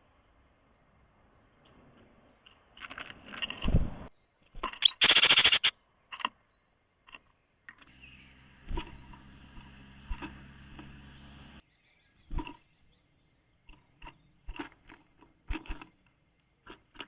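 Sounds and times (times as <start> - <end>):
bird wings fluttering: 2.8 - 5.7
steady low hum: 7.9 - 16.0.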